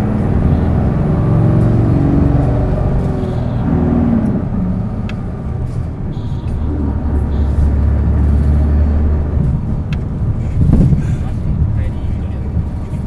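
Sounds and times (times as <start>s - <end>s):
bus diesel engine drone: 0.0s - 13.0s.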